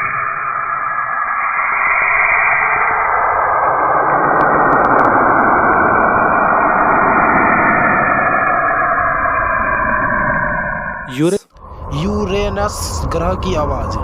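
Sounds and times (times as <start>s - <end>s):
dense rumbling hiss: 11.1s - 14.0s.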